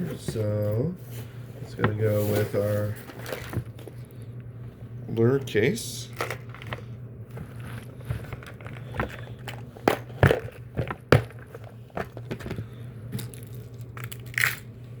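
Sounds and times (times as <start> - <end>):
steady low hum: 0.0 - 15.0
plastic case clicks and knocks: 8.3 - 12.6.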